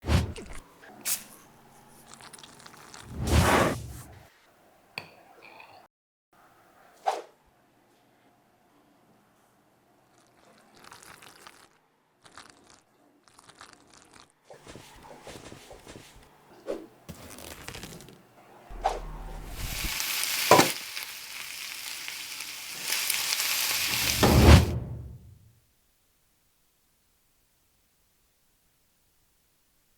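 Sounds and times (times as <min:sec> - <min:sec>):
fish sizzling in hot oil: 0:19.1 - 0:24.7.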